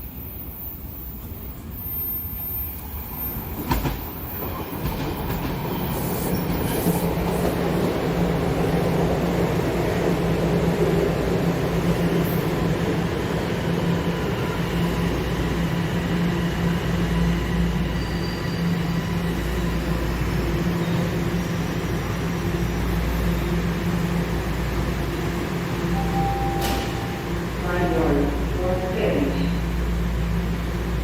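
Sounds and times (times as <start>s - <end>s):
subway train rumbling on track: 0.0s - 31.0s
faint thin high tones: 26.0s - 27.4s.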